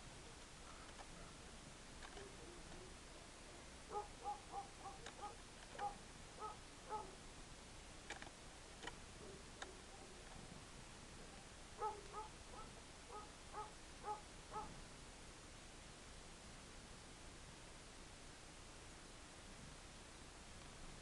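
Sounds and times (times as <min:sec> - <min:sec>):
sharp clicks: 0:00.8 - 0:01.1, 0:02.0 - 0:02.8, 0:05.0 - 0:06.0, 0:08.0 - 0:09.0.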